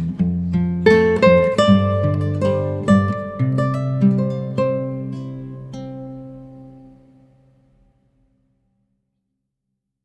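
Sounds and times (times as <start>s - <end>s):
acoustic guitar chord ringing: 0.0s - 8.0s.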